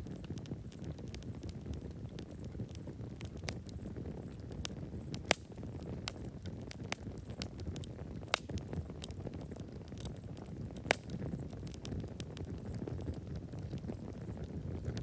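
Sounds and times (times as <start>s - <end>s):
burning wood crackling: 0.0s - 15.0s
fire flames rumbling: 0.0s - 15.0s.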